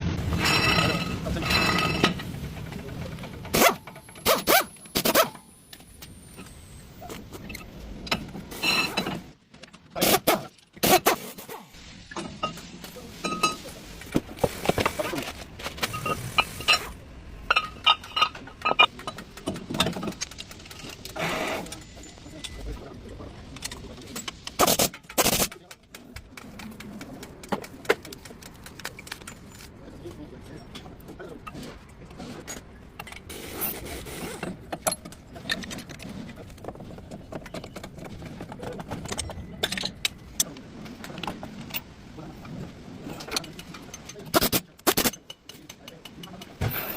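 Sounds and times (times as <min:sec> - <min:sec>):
metal tools clinking: 0:00.3 - 0:02.7, 0:06.4 - 0:09.3, 0:12.2 - 0:13.8, 0:14.8 - 0:25.8, 0:34.7 - 0:40.5.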